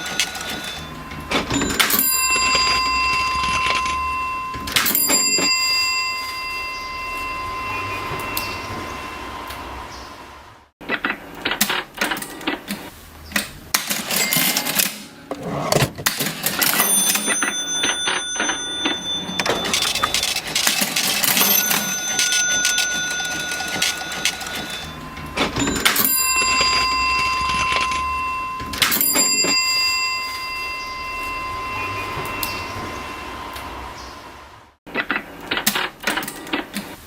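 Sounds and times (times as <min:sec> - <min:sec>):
cash register keys clacking: 0:00.0 - 0:06.0, 0:13.8 - 0:30.2
cash register bell ringing: 0:00.0 - 0:09.5, 0:13.8 - 0:34.0.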